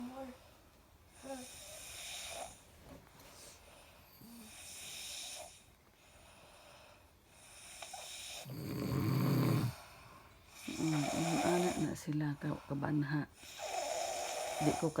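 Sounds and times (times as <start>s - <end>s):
person snoring: 7.9s - 9.9s, 10.6s - 12.0s, 13.4s - 15.0s.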